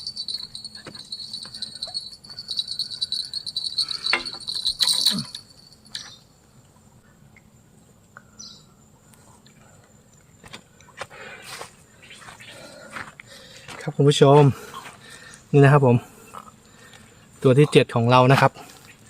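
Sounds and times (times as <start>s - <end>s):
insects trilling: 0.0s - 6.6s, 8.3s - 19.0s.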